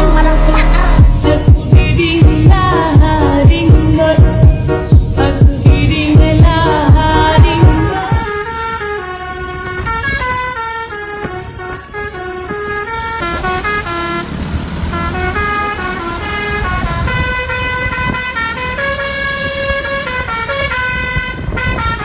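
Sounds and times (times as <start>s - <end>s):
low vehicle rumble: 0.0s - 22.0s
multi-tone air horn tune: 7.8s - 22.0s.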